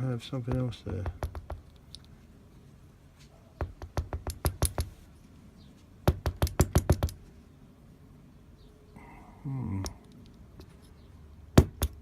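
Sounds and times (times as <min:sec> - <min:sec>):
lock parts clicking and tapping: 0:00.4 - 0:02.2, 0:09.8 - 0:10.8.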